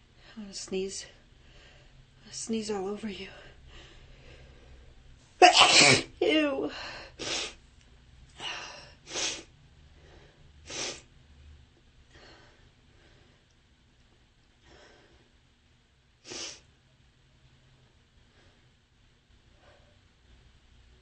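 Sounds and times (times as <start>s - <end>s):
woman sneezing and sniffing: 5.4s - 6.2s, 7.2s - 7.6s, 9.1s - 9.5s, 10.7s - 11.0s, 16.3s - 16.6s.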